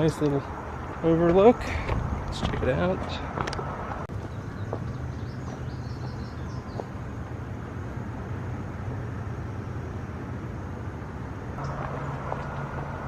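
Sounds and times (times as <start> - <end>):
bird chirping: 4.1 - 7.1.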